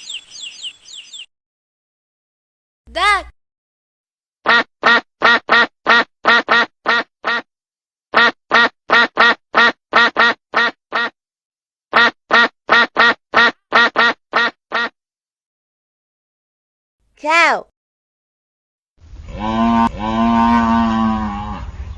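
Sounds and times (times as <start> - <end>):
duck quacking rapidly: 4.4 - 7.5, 8.1 - 11.2, 11.9 - 15.0.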